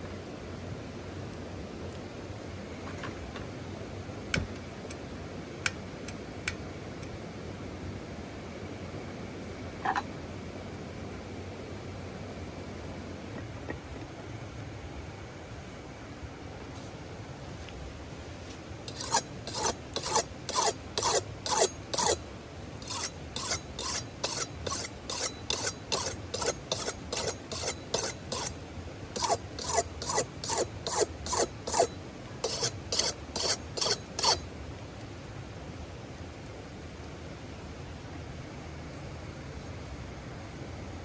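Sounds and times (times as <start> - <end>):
steady background hiss: 0.0 - 41.0
rhythmic rasping strokes: 18.9 - 28.6, 29.2 - 34.5.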